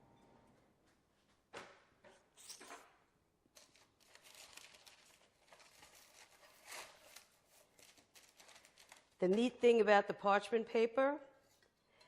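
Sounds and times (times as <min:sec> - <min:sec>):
parchment paper rustling: 0:03.6 - 0:09.4.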